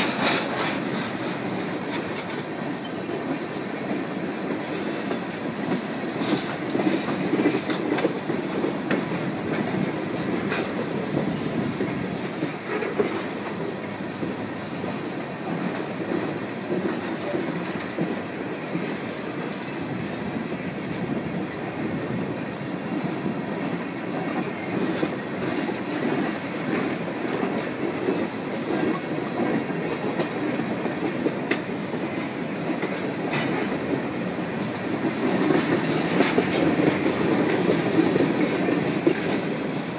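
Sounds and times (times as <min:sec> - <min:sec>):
freight train wheels rumbling: 0:00.0 - 0:39.9.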